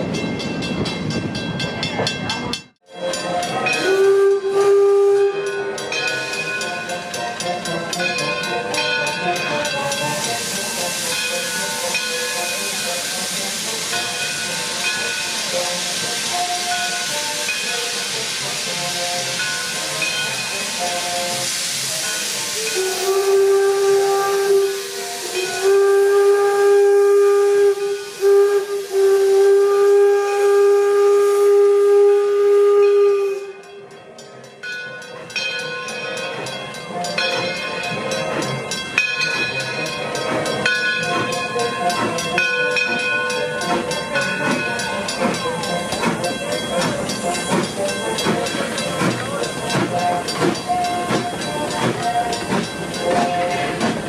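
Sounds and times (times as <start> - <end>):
steam whistle blasts: 3.7 - 6.0, 20.7 - 33.8
steam hissing: 3.8 - 33.7, 35.6 - 54.0.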